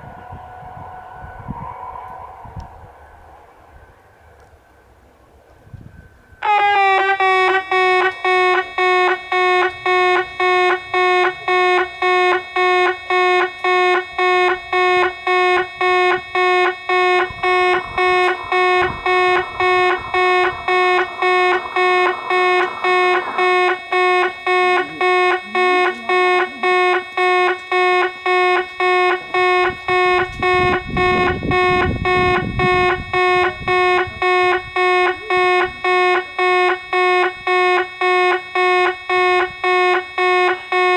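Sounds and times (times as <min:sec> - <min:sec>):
level-crossing warning bell ringing: 0:00.0 - 0:04.7, 0:06.4 - 0:40.9.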